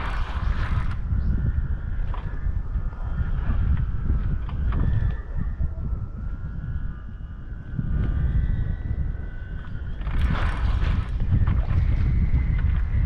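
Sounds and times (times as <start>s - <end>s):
faint high whine: 0.0s - 13.0s
wind buffeting microphone: 0.0s - 13.0s.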